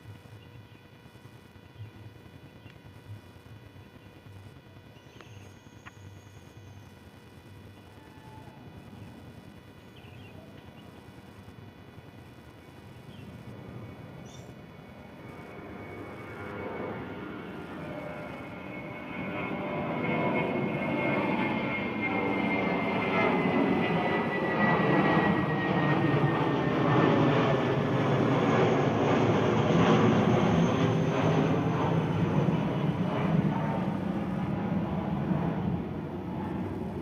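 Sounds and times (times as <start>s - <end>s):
faint engine whine: 0.0s - 37.0s
aircraft passing overhead: 13.0s - 37.0s.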